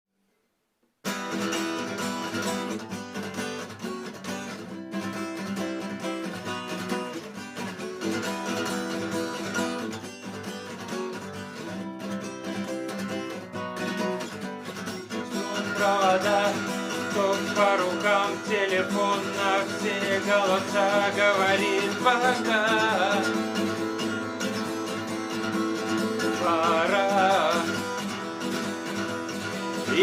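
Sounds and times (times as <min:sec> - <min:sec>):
acoustic guitar strumming chords: 0:01.0 - 0:30.0.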